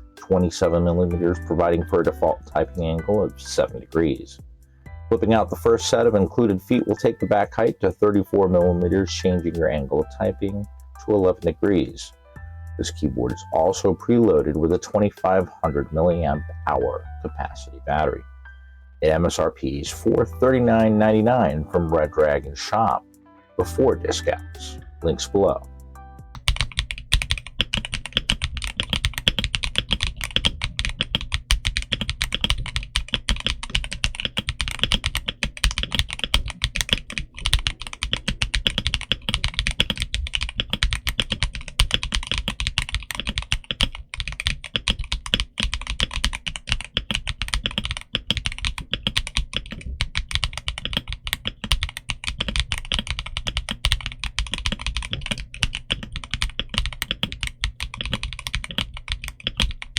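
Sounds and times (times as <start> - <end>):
mechanical keyboard typing: 0.0 - 4.4, 5.1 - 12.2, 12.8 - 17.0, 19.9 - 23.0, 26.4 - 59.9.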